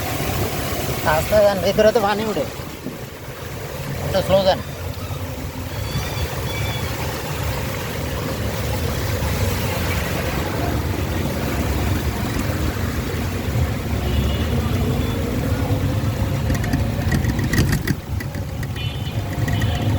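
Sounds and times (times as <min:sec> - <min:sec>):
vehicle engine rumbling: 0:02.4 - 0:19.9
sharp rattling clicks: 0:16.3 - 0:19.9.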